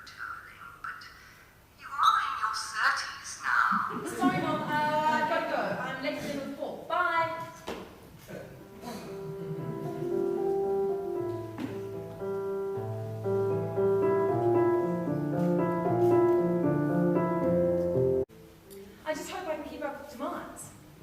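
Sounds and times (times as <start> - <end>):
piano music: 8.5 - 18.6.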